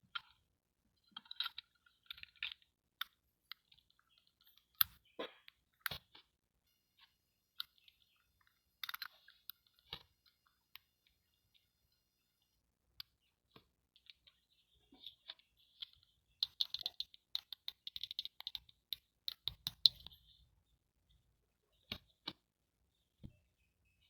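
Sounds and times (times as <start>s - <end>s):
plastic toy pieces clicking: 8.8s - 10.0s, 15.1s - 20.1s.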